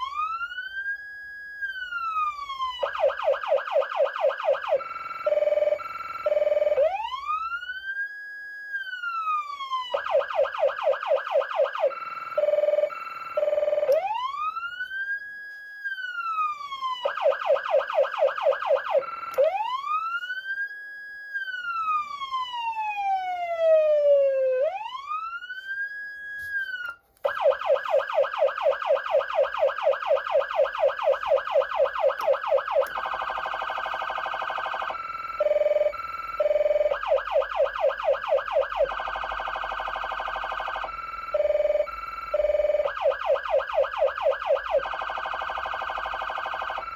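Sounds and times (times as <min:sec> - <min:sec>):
electronic siren yelping and wailing: 0:00.0 - 0:01.0, 0:01.6 - 0:15.2, 0:15.9 - 0:46.9.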